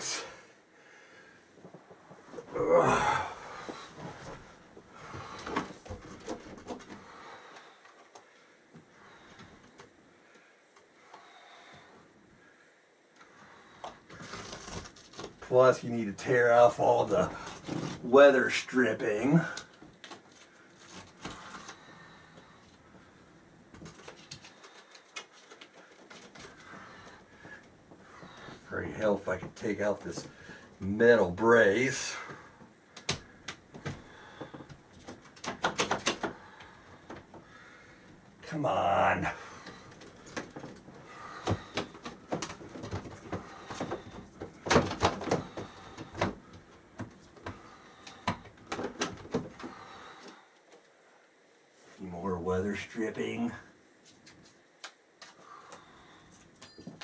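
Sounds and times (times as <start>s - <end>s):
foam stripping handling noise: 13.8s - 15.7s, 16.5s - 18.5s, 19.1s - 22.5s
light clicks and crackles: 19.5s - 30.7s.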